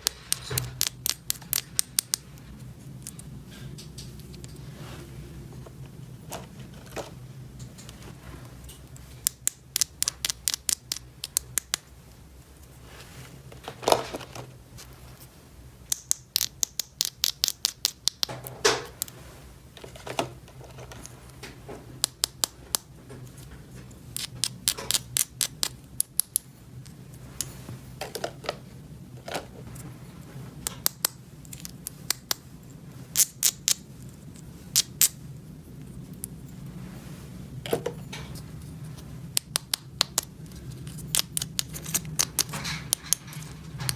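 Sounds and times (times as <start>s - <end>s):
plastic toy pieces clicking: 0.0s - 2.2s, 9.2s - 11.8s, 15.9s - 18.3s
steady low hum: 0.0s - 43.9s.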